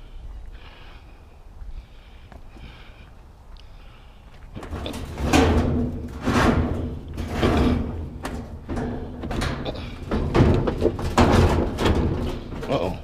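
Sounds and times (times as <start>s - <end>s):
washing machine scraping and rattling: 4.6s - 12.8s.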